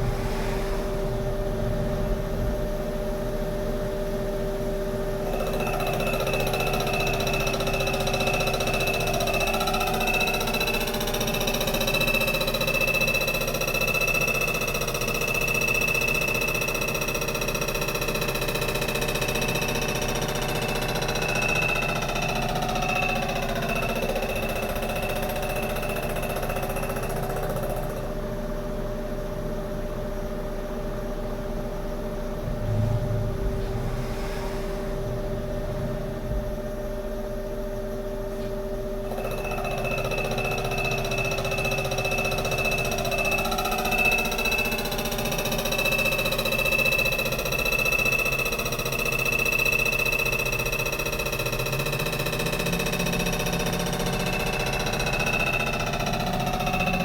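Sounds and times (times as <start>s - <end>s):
low machine hum: 0.0s - 5.4s, 31.4s - 39.0s
high spindle whine: 0.0s - 12.9s, 32.1s - 38.1s.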